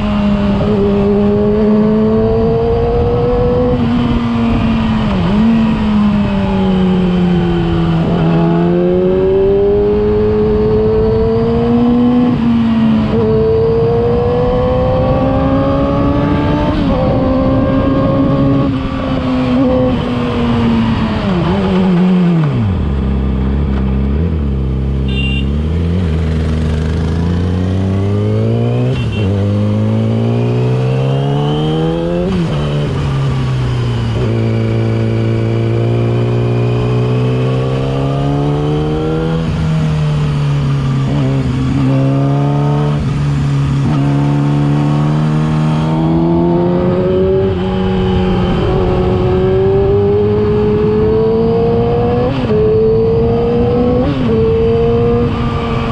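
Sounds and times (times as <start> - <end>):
motorcycle engine revving: 0.0 - 55.9.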